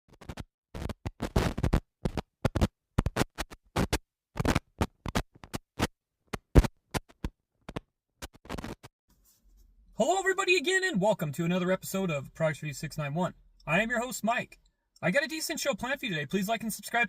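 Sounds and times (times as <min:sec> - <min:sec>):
record scratch noises: 0:00.1 - 0:08.9, 0:10.7 - 0:17.0.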